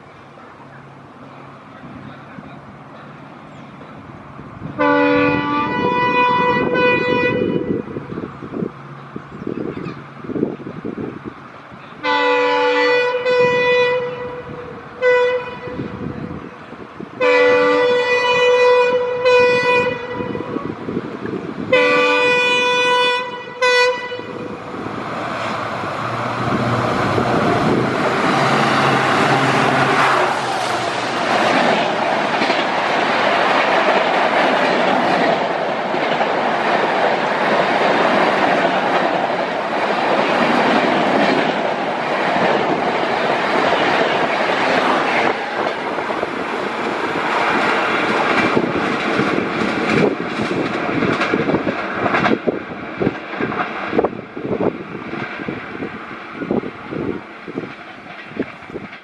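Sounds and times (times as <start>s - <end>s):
express train rushing past: 0.0s - 59.0s
locomotive horn blasts: 4.8s - 8.0s, 12.0s - 16.2s, 17.2s - 20.7s, 21.7s - 24.6s.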